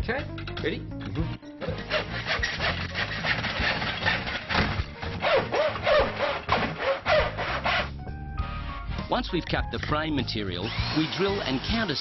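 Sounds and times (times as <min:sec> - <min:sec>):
hand saw cutting timber: 0:01.6 - 0:07.9.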